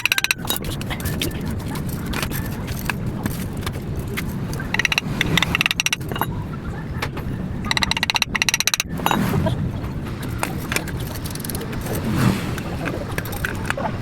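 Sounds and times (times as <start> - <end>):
metallic clicking of hand tools: 0.0 - 0.8, 4.6 - 6.3, 7.7 - 9.2
steady low rumble: 0.0 - 14.0.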